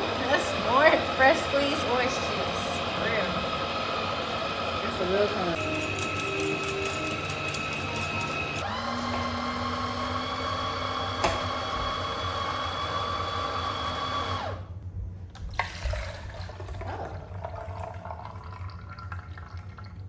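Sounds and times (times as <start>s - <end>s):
juicer motor whining: 0.0s - 14.8s.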